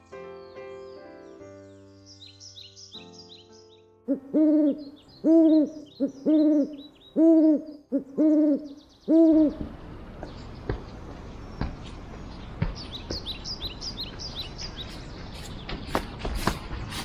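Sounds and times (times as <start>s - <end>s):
small birds chirping: 0.0s - 17.0s
bird hooting call: 4.1s - 9.7s
steady rushing hiss: 14.6s - 17.0s.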